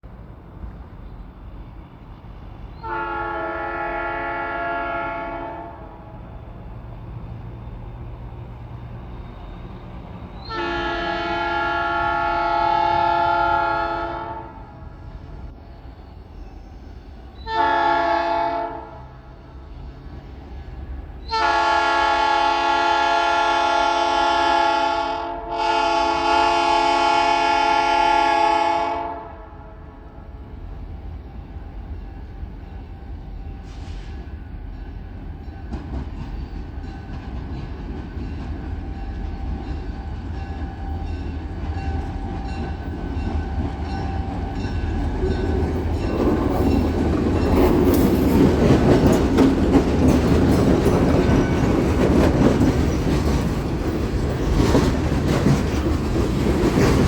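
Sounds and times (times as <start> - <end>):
locomotive air horn blasts: 2.8 - 6.0, 10.4 - 14.7, 17.4 - 19.2, 21.3 - 30.2.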